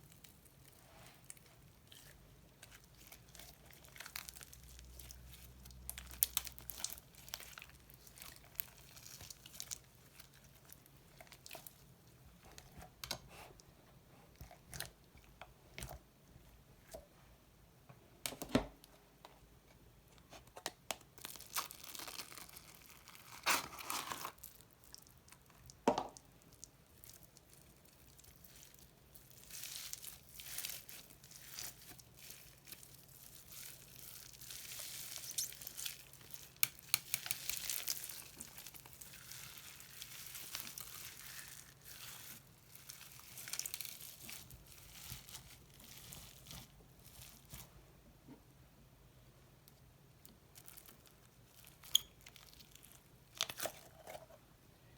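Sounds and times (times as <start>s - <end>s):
slime crackling and tearing: 0.0s - 11.8s, 21.1s - 25.7s, 26.4s - 47.6s.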